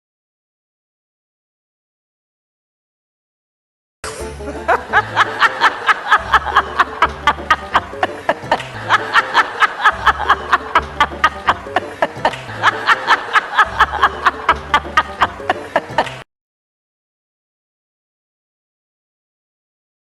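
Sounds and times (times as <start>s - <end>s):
low repeating bass line: 4.0s - 5.4s
rapid cackling laugh: 4.5s - 16.2s.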